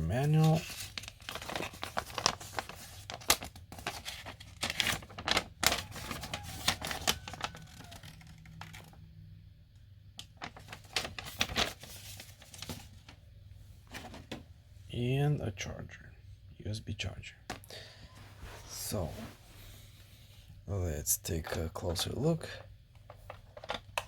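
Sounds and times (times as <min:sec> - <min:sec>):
paper and plastic packaging rustling: 0:00.0 - 0:09.0, 0:10.2 - 0:13.2, 0:13.8 - 0:14.4, 0:21.9 - 0:24.0.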